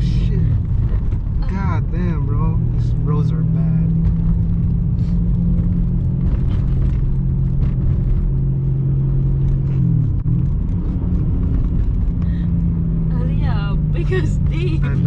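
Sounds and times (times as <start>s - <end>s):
car engine and exhaust droning: 0.0s - 15.0s
low road rumble: 0.0s - 15.0s.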